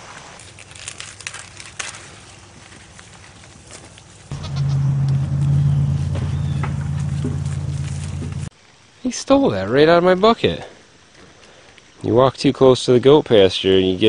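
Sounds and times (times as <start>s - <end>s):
corn plants crackling: 0.3s - 8.6s
goat bleating: 4.3s - 8.3s.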